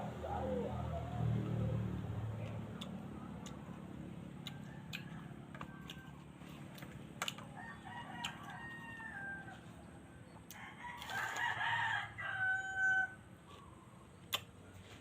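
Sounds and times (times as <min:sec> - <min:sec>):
rooster crowing: 0:04.4 - 0:06.6, 0:07.5 - 0:13.3.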